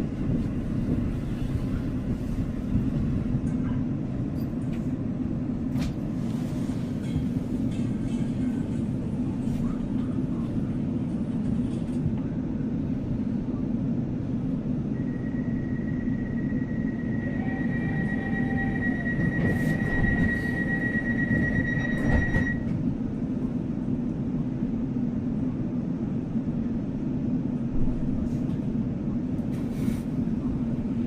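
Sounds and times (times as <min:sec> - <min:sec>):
train rumbling inside carriage: 0:00.0 - 0:31.0
high-pitched tone: 0:15.0 - 0:22.6.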